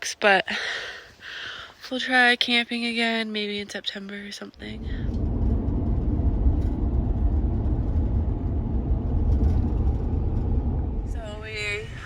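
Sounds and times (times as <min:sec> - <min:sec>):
car road and engine rumble: 0:04.5 - 0:12.0.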